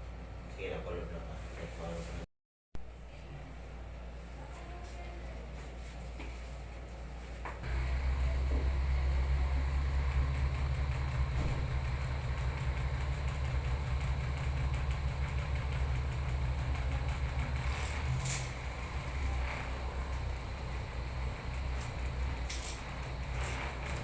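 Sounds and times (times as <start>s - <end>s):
steady low rumble: 7.6s - 24.0s.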